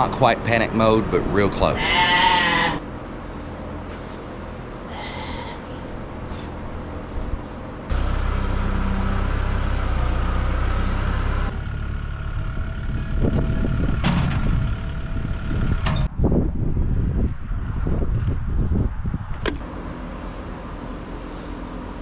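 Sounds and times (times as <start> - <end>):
loader engine running: 2.4 - 16.3, 19.6 - 22.0
sharp clunks and rattles: 13.9 - 14.7.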